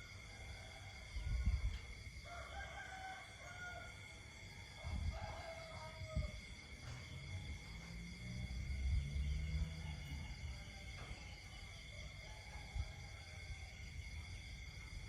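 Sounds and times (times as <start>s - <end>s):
insects trilling: 0.0s - 15.0s.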